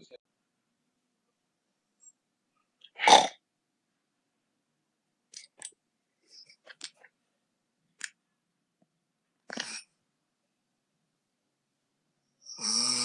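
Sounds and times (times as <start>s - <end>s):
person snoring: 9.5s - 9.9s, 12.4s - 13.0s.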